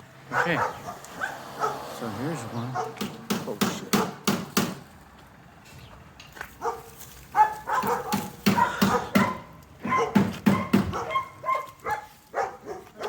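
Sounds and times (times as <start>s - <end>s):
dog barking: 0.3s - 1.9s, 2.7s - 3.0s, 3.9s - 4.2s, 6.6s - 13.0s.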